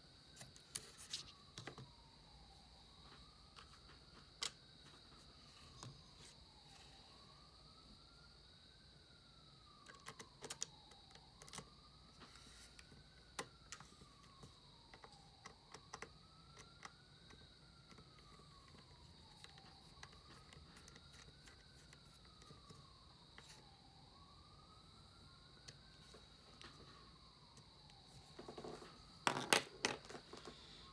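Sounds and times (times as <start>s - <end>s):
faint siren wailing: 0.0s - 30.9s
small clicks and ticks: 9.8s - 12.3s.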